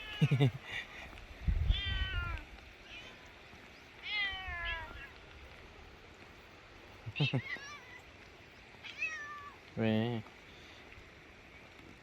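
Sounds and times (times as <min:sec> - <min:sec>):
cat meowing: 0:01.7 - 0:03.1, 0:04.0 - 0:05.1, 0:08.8 - 0:09.6.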